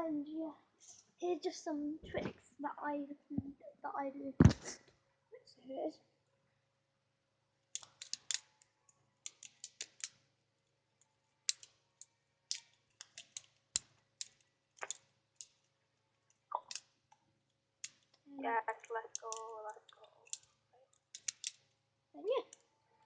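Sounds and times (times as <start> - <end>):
plastic parts clicking and clacking: 7.7 - 10.3, 11.4 - 21.7.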